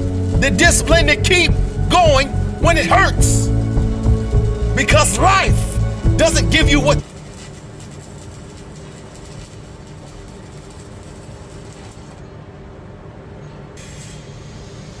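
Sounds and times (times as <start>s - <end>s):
low machine hum: 0.0s - 7.1s
welding arc crackle: 0.0s - 12.3s, 13.8s - 15.0s.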